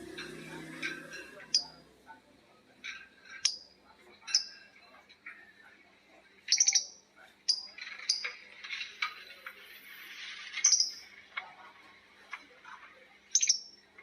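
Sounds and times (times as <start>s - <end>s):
lovebirds rasping chatter: 0.0s - 1.9s, 2.8s - 9.4s, 13.2s - 13.8s
lovebirds chirping: 6.4s - 8.8s, 10.5s - 11.2s, 13.3s - 13.8s.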